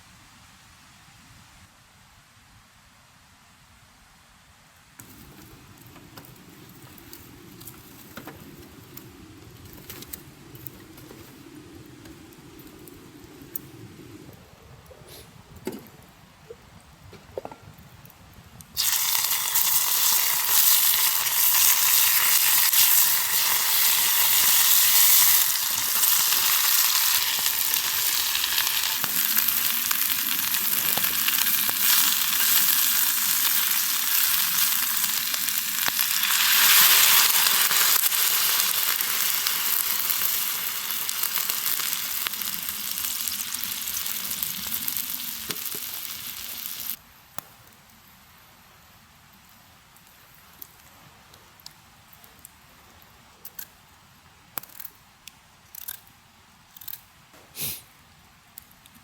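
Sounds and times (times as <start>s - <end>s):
food sizzling in a hot pan: 18.8s - 47.0s.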